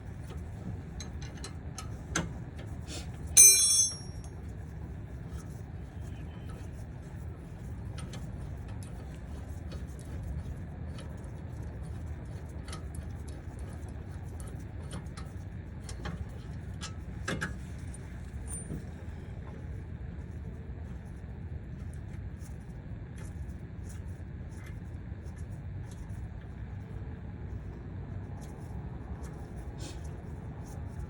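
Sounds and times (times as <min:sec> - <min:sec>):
low background rumble: 0:00.0 - 0:31.0
socket wrench and bolts clinking: 0:03.4 - 0:04.3.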